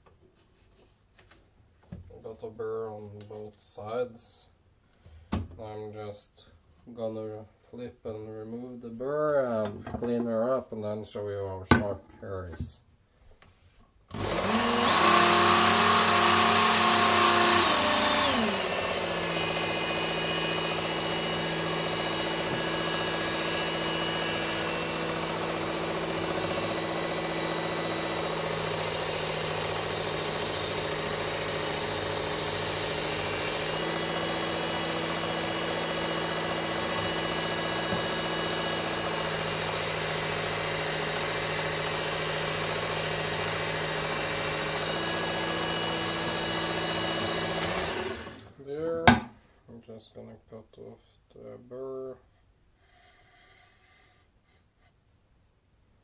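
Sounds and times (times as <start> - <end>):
belt sharpener grinding: 14.1 - 48.4.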